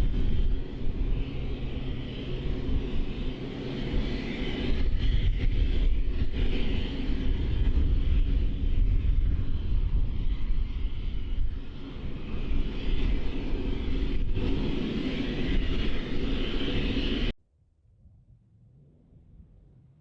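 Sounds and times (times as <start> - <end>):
aircraft engine rumble: 0.0 - 17.4.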